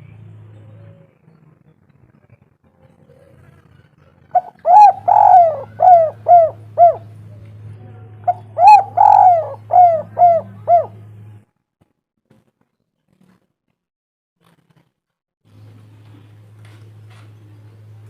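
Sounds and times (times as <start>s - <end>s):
low steady hum: 2.8s - 11.5s
dove cooing: 4.3s - 7.4s, 8.2s - 11.1s.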